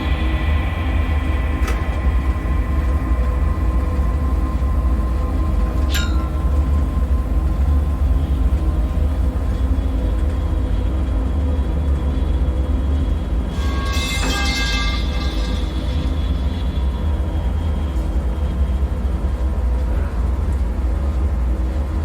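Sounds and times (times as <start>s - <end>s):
faint hum: 0.0s - 22.0s
high squeal sliding down: 13.5s - 17.3s.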